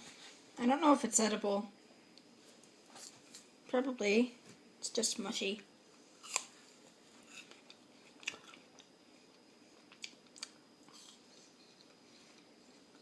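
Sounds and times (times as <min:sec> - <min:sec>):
chewing soft apple: 0:06.2 - 0:06.5, 0:07.2 - 0:13.0.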